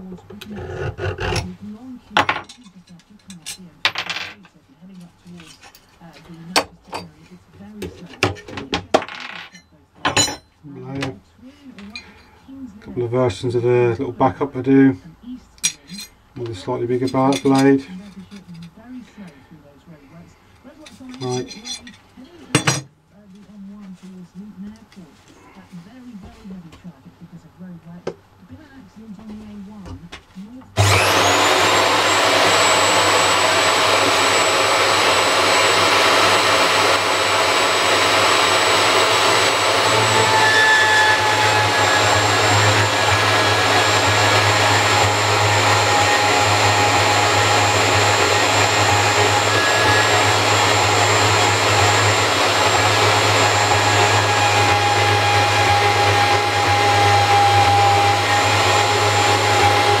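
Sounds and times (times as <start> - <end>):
power tool motor whining: 0.4 - 1.5, 30.8 - 60.0.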